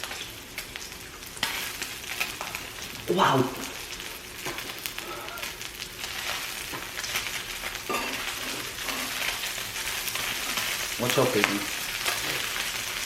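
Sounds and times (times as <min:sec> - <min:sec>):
fat crackling and popping: 0:00.0 - 0:13.0
meat sizzling on a grill: 0:00.0 - 0:13.0.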